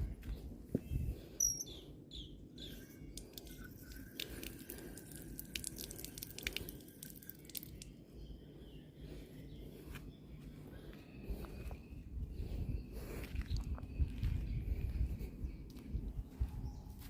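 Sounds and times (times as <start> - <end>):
bird chirps: 0.8 - 4.2.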